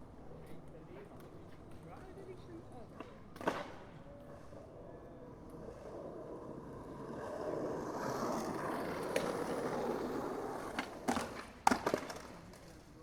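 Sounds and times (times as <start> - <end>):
skateboard wheels rolling on concrete: 0.0 - 13.0
skateboard clacks: 2.8 - 4.8, 5.4 - 13.0.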